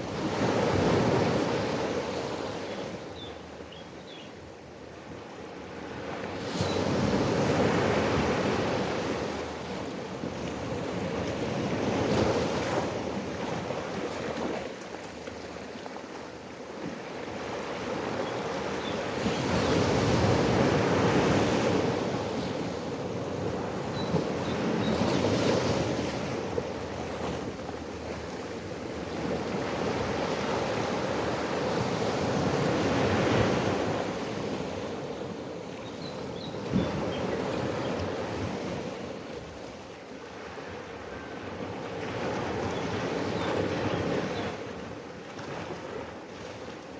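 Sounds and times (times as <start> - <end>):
ocean waves breaking on shore: 0.0 - 46.9.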